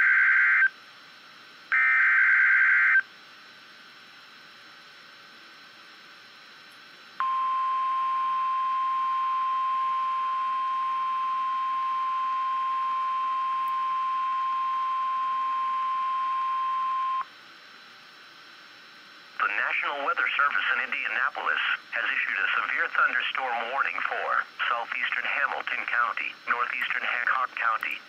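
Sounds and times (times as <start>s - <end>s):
faint radio hiss: 0.3s - 28.0s
high steady warning beep: 7.2s - 17.3s.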